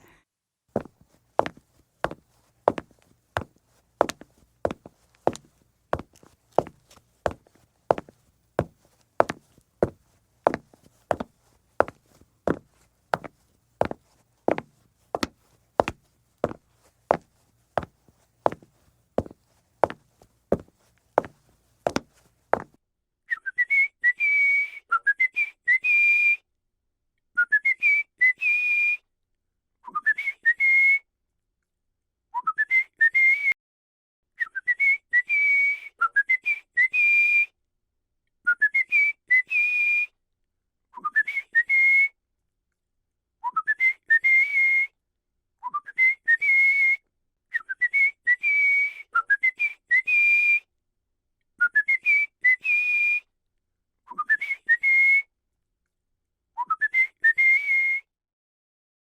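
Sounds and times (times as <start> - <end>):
person whistling a tune: 23.3 - 26.4, 27.4 - 29.0, 29.9 - 31.0, 32.4 - 33.6, 34.4 - 37.5, 38.5 - 40.1, 41.0 - 42.2, 43.4 - 45.0, 45.6 - 47.0, 47.6 - 50.6, 51.6 - 53.2, 54.1 - 55.3, 56.6 - 58.1.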